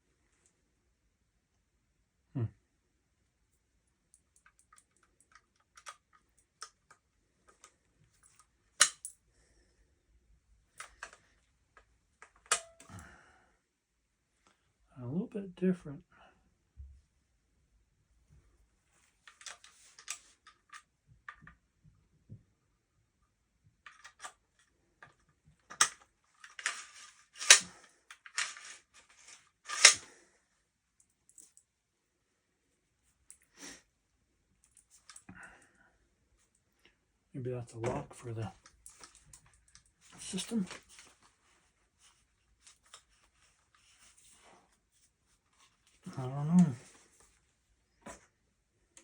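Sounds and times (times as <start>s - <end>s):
shotgun parts clicking: 4.4s - 9.2s, 12.2s - 12.9s, 25.7s - 30.1s.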